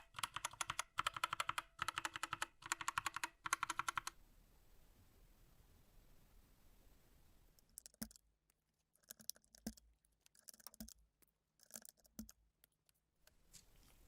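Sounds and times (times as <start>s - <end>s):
keyboard keys clicking: 0.0s - 4.2s, 7.6s - 8.3s, 9.0s - 13.3s.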